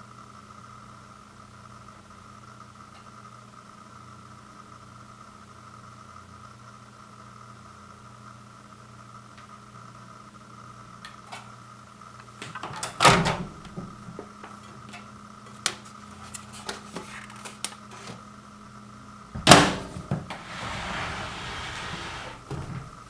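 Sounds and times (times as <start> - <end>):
microwave oven humming: 0.0 - 23.0
microwave door opening clunk: 12.4 - 14.3, 19.4 - 23.0
loud clunk: 19.4 - 23.0.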